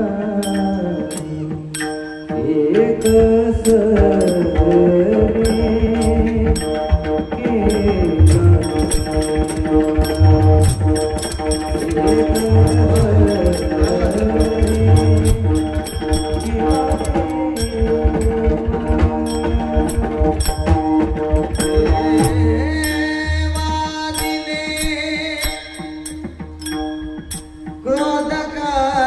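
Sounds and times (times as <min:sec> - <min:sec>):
devotional music melody: 0:00.0 - 0:29.0
metallic cymbal clicks: 0:00.4 - 0:02.4, 0:05.4 - 0:28.2
low drum strokes: 0:05.2 - 0:23.9.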